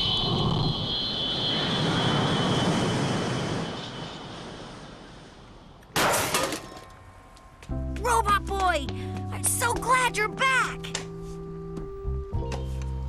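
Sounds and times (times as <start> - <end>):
cartoon jet engine whine: 0.0 - 5.9.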